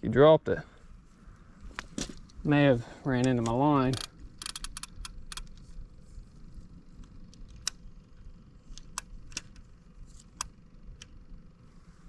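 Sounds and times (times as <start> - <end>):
low steady rumble: 0.0 - 12.0
sharp clicks and ticks: 3.2 - 5.6.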